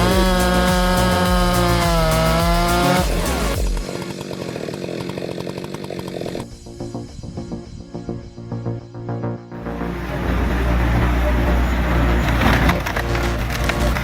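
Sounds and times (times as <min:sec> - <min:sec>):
background music with steady beat: 0:00.0 - 0:04.6, 0:06.4 - 0:14.0
chainsaw cutting log: 0:00.0 - 0:06.5, 0:12.2 - 0:14.0.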